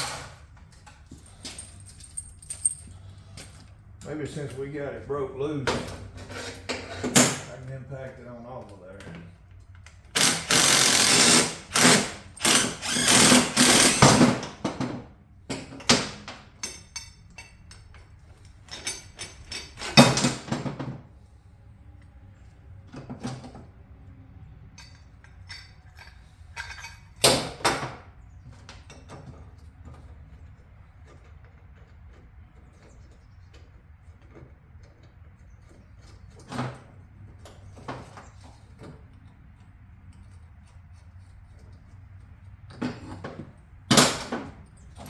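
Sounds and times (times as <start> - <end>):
impact wrench running: 10.2 - 14.6.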